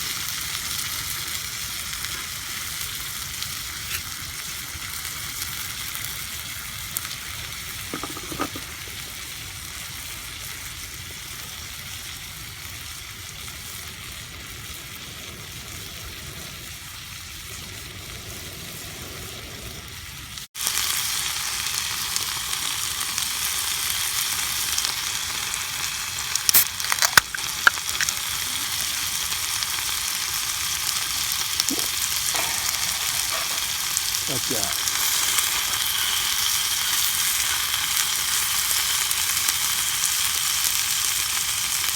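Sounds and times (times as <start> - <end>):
meat sizzling in a skillet: 0.0 - 41.9
sharp pops: 26.4 - 28.2, 31.6 - 35.9.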